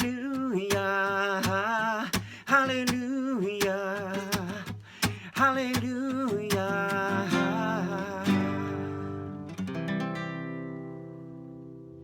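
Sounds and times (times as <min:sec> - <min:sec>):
person singing with vibrato: 0:00.0 - 0:09.3
strummed acoustic guitar: 0:00.0 - 0:12.0.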